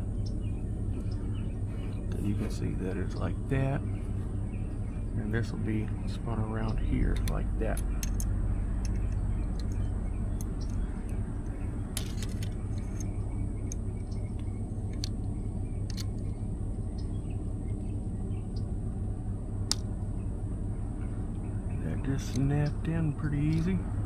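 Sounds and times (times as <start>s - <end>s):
steady low hum: 0.0s - 24.0s
plastic parts clicking: 7.1s - 9.8s, 11.9s - 13.1s, 15.9s - 16.2s.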